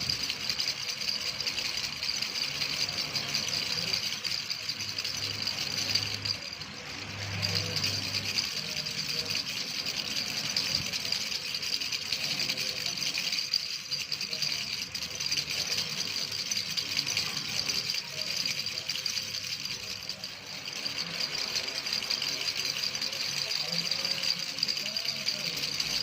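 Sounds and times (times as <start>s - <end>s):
baby rattle shaken: 0.0s - 26.0s.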